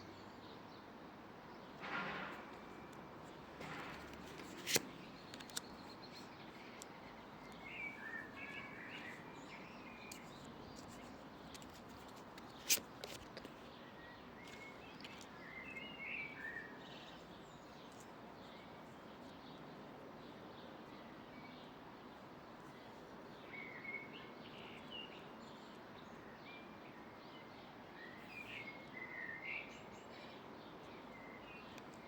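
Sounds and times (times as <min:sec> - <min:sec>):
birds chirping: 0:00.0 - 0:32.0
faint outdoor hiss: 0:00.0 - 0:32.0
sharp clicks: 0:03.7 - 0:05.8.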